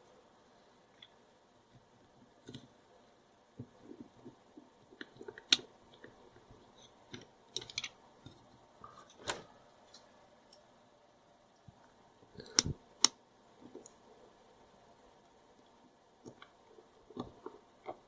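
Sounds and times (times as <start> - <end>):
small parts clicking and knocking: 3.6 - 10.7.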